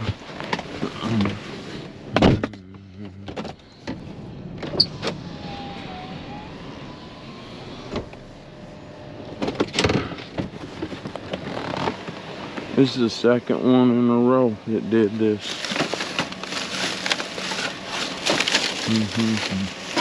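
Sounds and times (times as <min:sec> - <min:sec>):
low mechanical hum: 0:00.0 - 0:20.0
objects being handled: 0:15.4 - 0:20.0.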